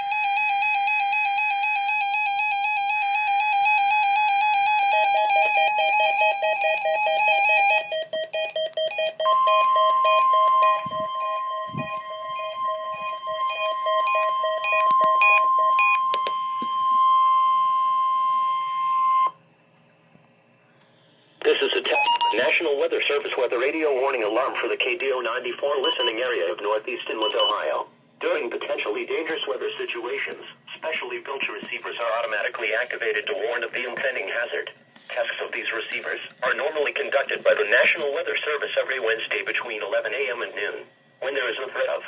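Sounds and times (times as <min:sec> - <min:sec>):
steady warning alarm tone: 0:00.0 - 0:20.6, 0:21.8 - 0:30.8
warbling electronic alert beeps: 0:05.2 - 0:19.4.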